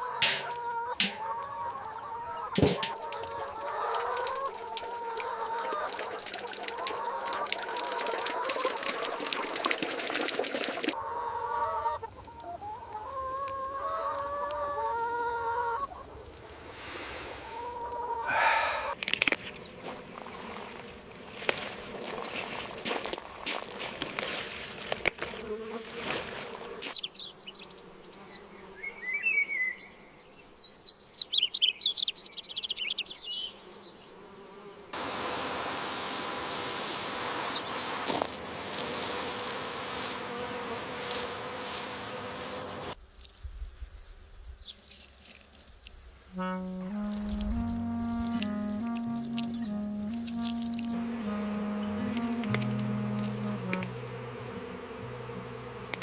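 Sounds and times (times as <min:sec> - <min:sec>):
hens clucking: 0:00.0 - 0:16.6, 0:17.2 - 0:19.0
insect-like buzz: 0:18.3 - 0:29.2, 0:33.4 - 0:43.4, 0:46.3 - 0:56.0
small birds chirping: 0:26.8 - 0:34.2.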